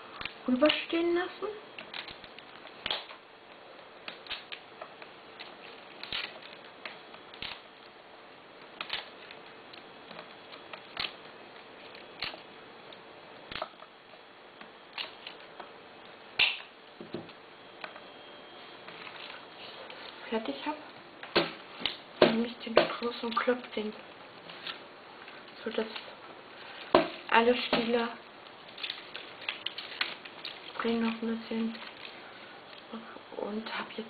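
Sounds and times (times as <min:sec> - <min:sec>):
stems being snipped: 0:01.8 - 0:07.7, 0:16.4 - 0:16.7.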